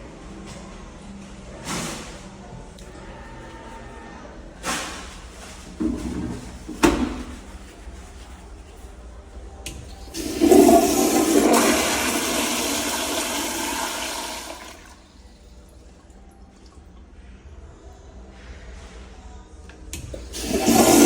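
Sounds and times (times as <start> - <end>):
toilet flushing water rush: 9.9 - 15.2, 20.1 - 21.0.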